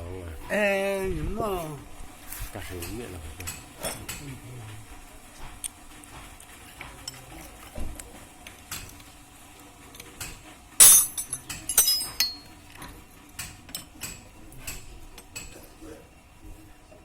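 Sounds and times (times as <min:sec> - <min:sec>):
metal clinks clattering: 0:10.8 - 0:12.5.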